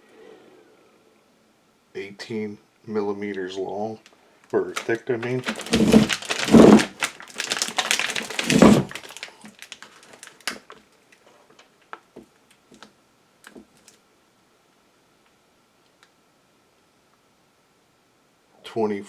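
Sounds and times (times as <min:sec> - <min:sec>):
heavy knocks: 0:05.5 - 0:07.0, 0:08.3 - 0:09.0.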